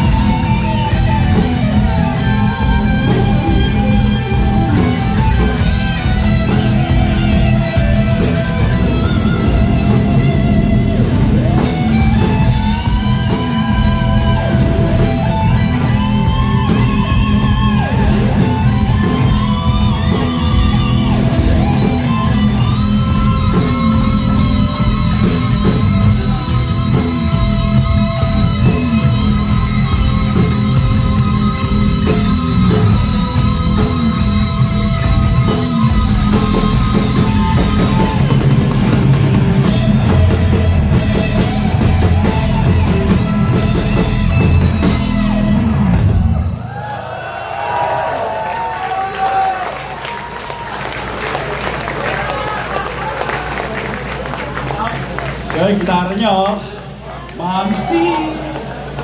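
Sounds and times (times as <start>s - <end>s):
drum beat: 0.0s - 46.0s
electric guitar lead: 0.0s - 46.7s
bass: 0.0s - 59.0s.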